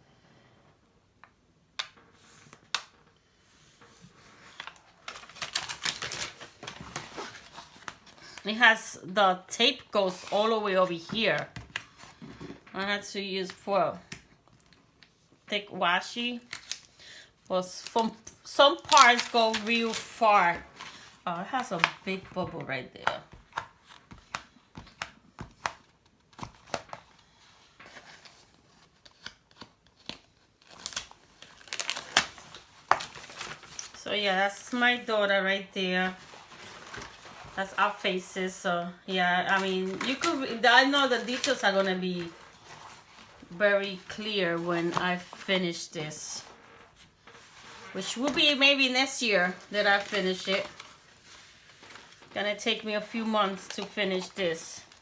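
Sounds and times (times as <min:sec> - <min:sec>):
plastic film crinkling: 0:03.9 - 0:08.7, 0:16.0 - 0:17.0, 0:17.6 - 0:22.4, 0:23.3 - 0:35.1, 0:35.8 - 0:55.0
crinkles and clicks: 0:16.4 - 0:16.9
plastic-covered canvas handling: 0:18.6 - 0:22.0, 0:30.6 - 0:34.0, 0:36.0 - 0:37.8, 0:39.4 - 0:48.6, 0:49.3 - 0:52.4.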